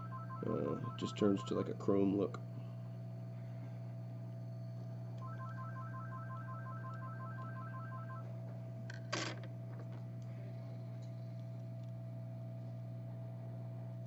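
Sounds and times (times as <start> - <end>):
two-pitch electronic beeps: 0.0 - 1.6, 5.2 - 8.2.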